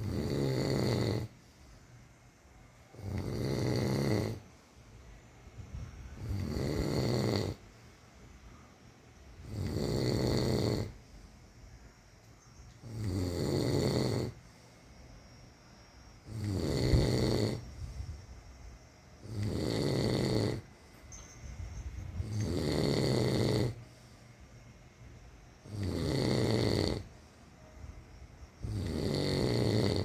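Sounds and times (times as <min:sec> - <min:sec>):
person snoring: 0:00.0 - 0:01.4, 0:02.9 - 0:04.4, 0:06.2 - 0:07.6, 0:09.4 - 0:11.0, 0:12.8 - 0:14.4, 0:16.2 - 0:17.8, 0:19.2 - 0:20.7, 0:22.2 - 0:23.9, 0:25.6 - 0:27.2, 0:28.6 - 0:30.0
quiet breathing: 0:00.0 - 0:30.0.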